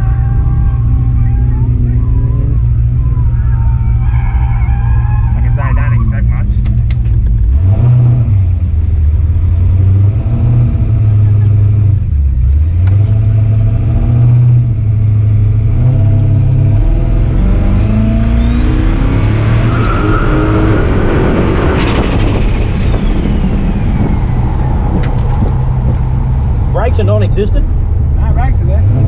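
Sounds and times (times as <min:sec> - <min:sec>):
turbo whine: 0:00.0 - 0:07.0, 0:15.9 - 0:28.5
pickup truck engine revving: 0:00.0 - 0:29.0.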